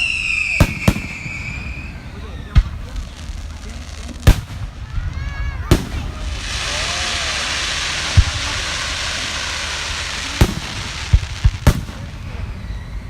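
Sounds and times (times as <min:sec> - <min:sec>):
firework booms: 0:00.0 - 0:13.0
firework hiss: 0:00.0 - 0:13.0.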